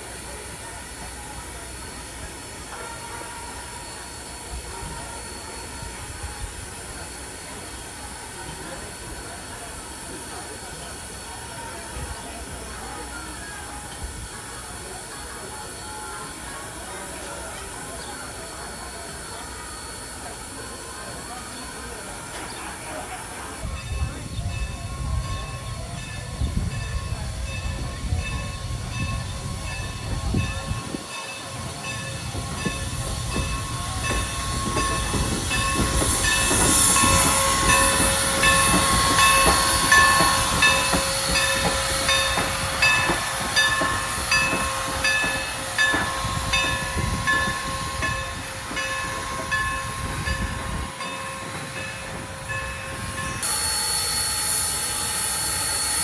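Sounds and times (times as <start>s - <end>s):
steam locomotive running by: 0.0s - 56.0s
regular ringing bell: 23.7s - 56.0s.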